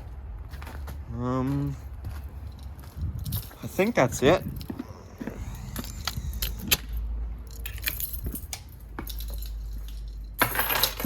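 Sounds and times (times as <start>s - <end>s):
keys jangling: 2.2s - 4.8s, 5.8s - 11.0s.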